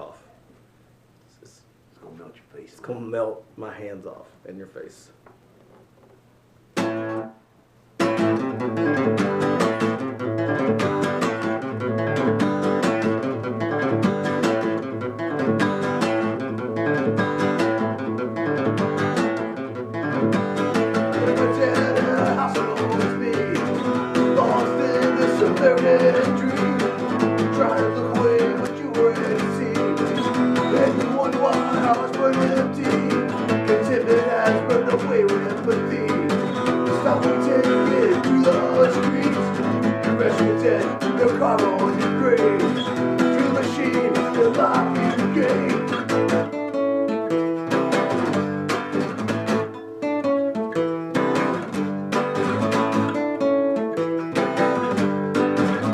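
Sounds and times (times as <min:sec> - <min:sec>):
acoustic guitar strumming: 0:06.8 - 0:07.4, 0:08.0 - 0:55.9.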